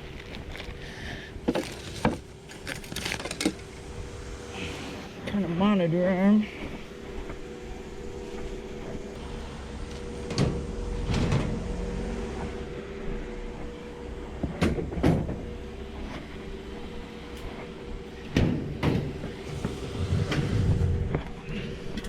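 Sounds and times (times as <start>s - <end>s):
steady hum: 0.0s - 22.0s
objects knocking and clunking: 1.4s - 3.7s.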